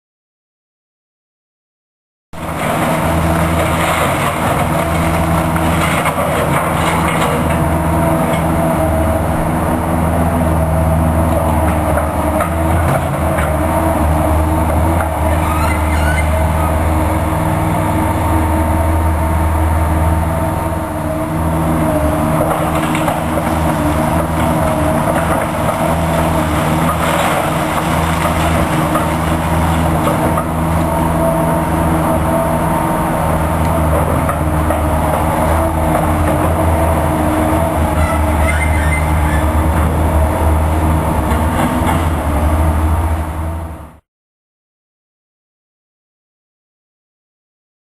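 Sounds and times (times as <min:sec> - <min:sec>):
diesel engine running: 0:02.4 - 0:44.0.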